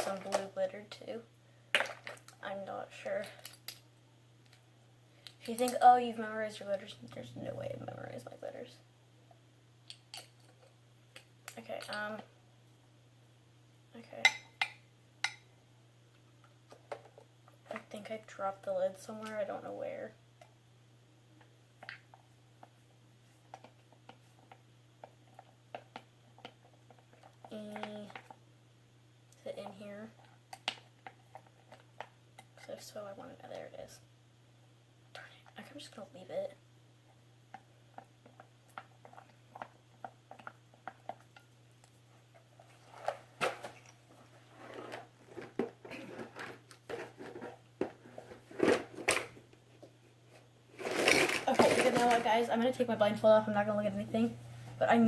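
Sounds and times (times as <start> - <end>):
plastic containers clicking and clattering: 44.6 - 49.4, 50.8 - 52.3.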